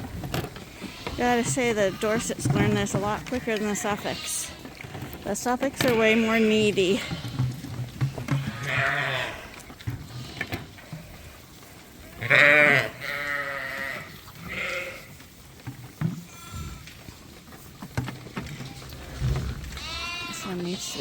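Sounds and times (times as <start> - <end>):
lambs bleating: 0.7 - 7.3, 8.4 - 11.3, 12.0 - 15.1, 19.6 - 21.0.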